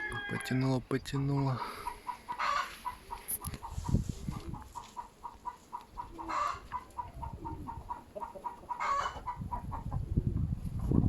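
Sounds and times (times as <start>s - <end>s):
wind rumble on microphone: 3.4s - 4.8s, 6.0s - 8.0s, 8.8s - 11.0s.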